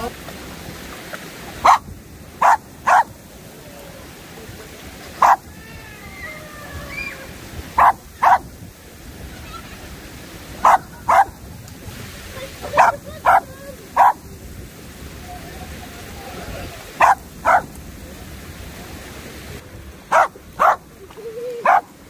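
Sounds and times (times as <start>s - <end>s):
dog barking: 1.6s - 3.1s, 5.2s - 5.4s, 7.8s - 8.5s, 10.6s - 11.4s, 12.8s - 14.2s, 17.0s - 17.7s, 20.1s - 20.8s, 21.6s - 21.9s.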